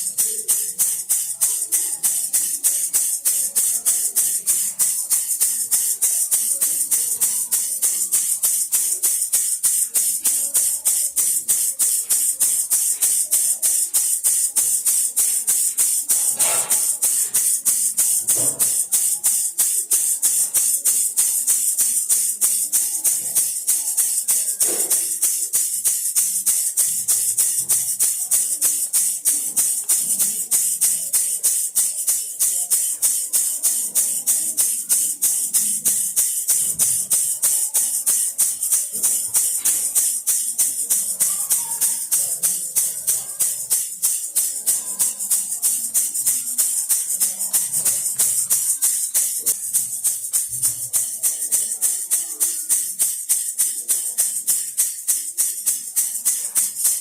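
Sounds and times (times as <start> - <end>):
baby rattle shaken: 0.0 - 57.0.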